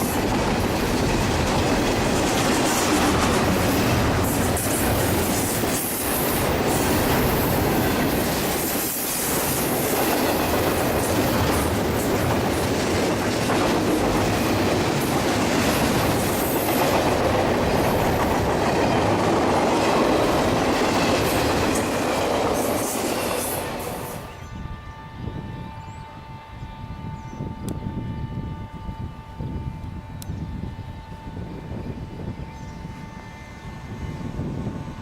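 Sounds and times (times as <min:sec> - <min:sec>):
train wheels clattering on rails: 0:00.0 - 0:24.3.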